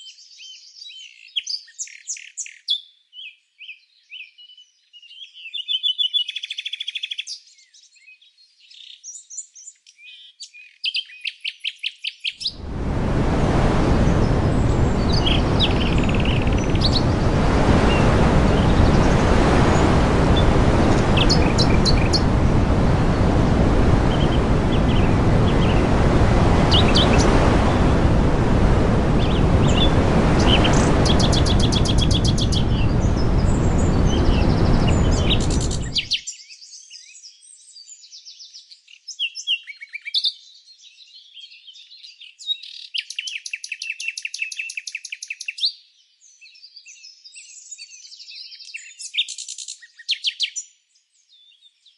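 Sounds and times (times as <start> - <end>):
songbirds chirping and trilling: 0.0 - 13.0, 13.7 - 51.9
loud steady rushing noise: 12.6 - 36.1.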